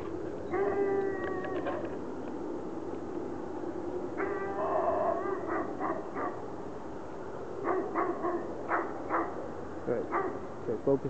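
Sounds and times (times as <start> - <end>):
dog barking and yelping: 0.4 - 1.4, 4.2 - 6.4, 7.6 - 9.4, 10.1 - 10.5
dog whining: 0.4 - 1.9.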